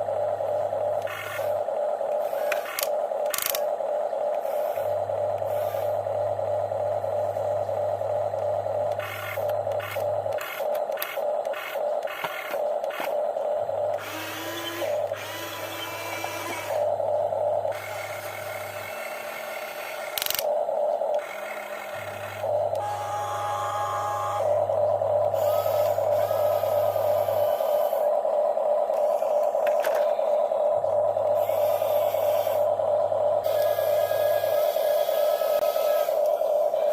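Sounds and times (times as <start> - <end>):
low steady hum: 0.0 - 36.9
toy electric motors whining: 0.0 - 36.9.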